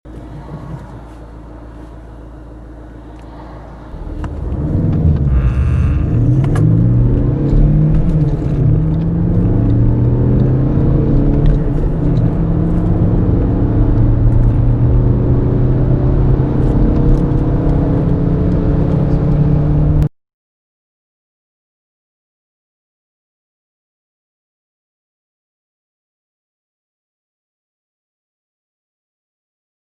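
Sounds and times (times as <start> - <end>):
car engine accelerating: 0.1 - 20.1.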